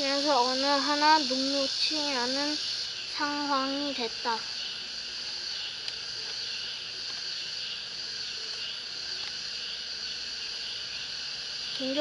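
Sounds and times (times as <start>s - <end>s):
insects chirring: 0.0s - 12.0s.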